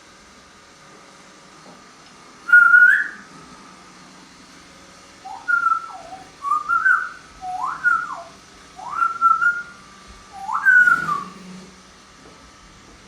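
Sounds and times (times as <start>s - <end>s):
parrot whistling: 2.5s - 3.3s, 5.2s - 11.6s.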